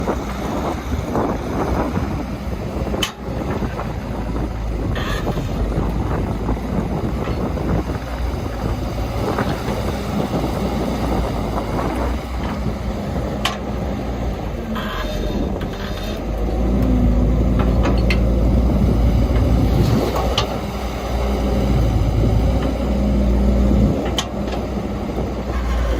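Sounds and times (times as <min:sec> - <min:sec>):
diesel machinery engine running: 0:00.0 - 0:25.9.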